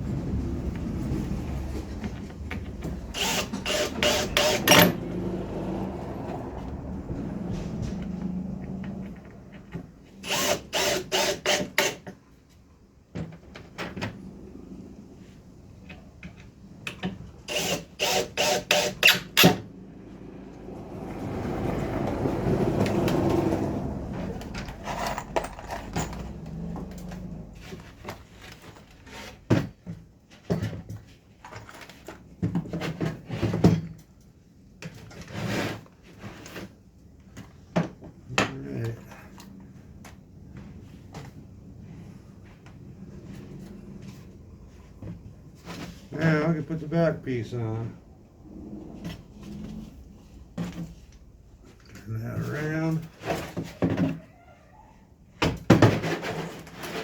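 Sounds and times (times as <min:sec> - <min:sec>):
cordless drill driving screws: 0:03.1 - 0:05.0, 0:10.2 - 0:12.0, 0:17.5 - 0:19.6.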